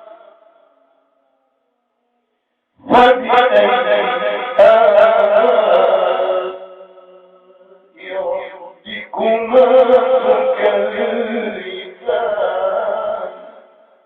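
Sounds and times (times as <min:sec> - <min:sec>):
man chanting melodic recitation: 0:02.8 - 0:13.6.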